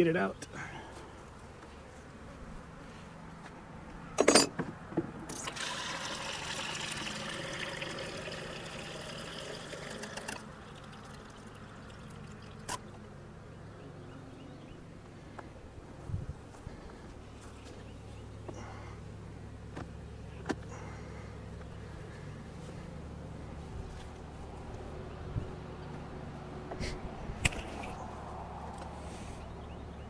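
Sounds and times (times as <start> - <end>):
liquid pouring into feeder: 5.3 - 12.9.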